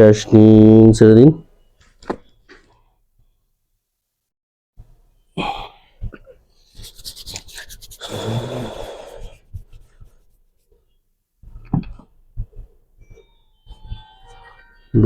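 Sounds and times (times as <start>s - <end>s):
person breathing deeply: 5.4s - 10.2s.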